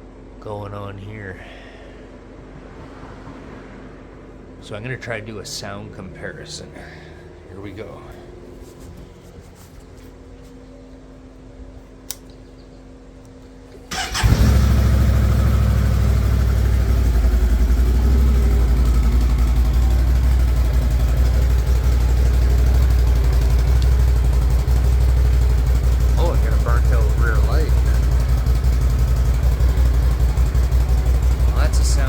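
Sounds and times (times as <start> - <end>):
engine starting and idling: 13.7 - 32.0.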